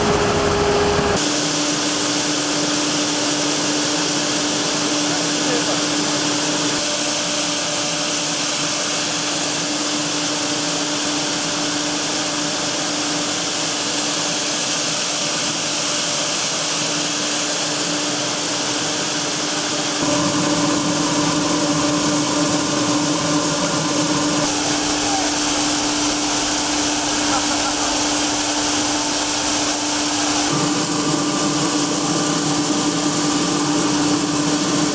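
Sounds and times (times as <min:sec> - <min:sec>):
agricultural machine droning: 0:00.0 - 0:07.5, 0:19.2 - 0:34.9.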